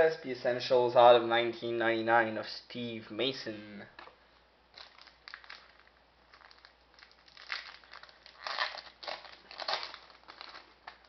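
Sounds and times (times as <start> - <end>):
card packs crinkling and rustling: 4.8 - 11.0.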